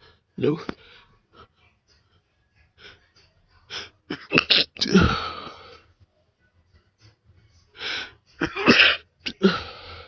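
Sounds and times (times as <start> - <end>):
person sneezing: 4.1 - 5.6, 8.4 - 9.8.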